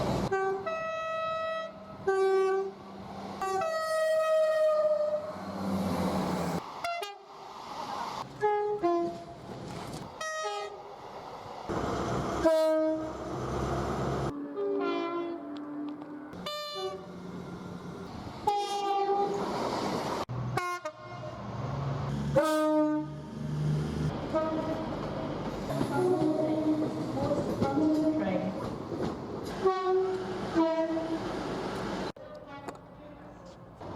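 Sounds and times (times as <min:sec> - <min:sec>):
trains rumbling and rattling past: 0:00.0 - 0:33.9
two-tone train horn blasts: 0:00.3 - 0:02.7, 0:10.2 - 0:10.8, 0:12.4 - 0:13.3, 0:14.3 - 0:17.1, 0:18.4 - 0:19.4, 0:20.5 - 0:21.4, 0:22.3 - 0:23.3, 0:24.3 - 0:25.0, 0:25.9 - 0:27.0, 0:29.6 - 0:31.2.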